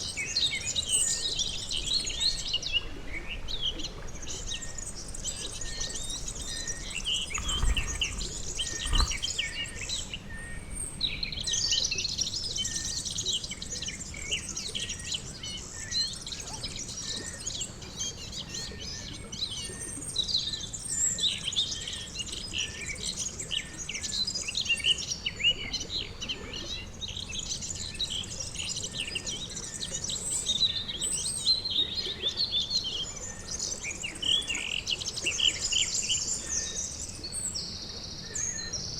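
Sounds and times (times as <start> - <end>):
birds chirping and singing: 5.9 - 9.4.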